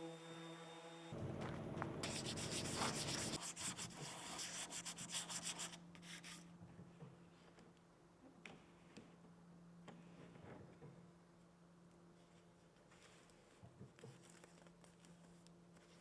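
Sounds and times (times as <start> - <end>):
sandpaper rasping: 2.0 - 6.3.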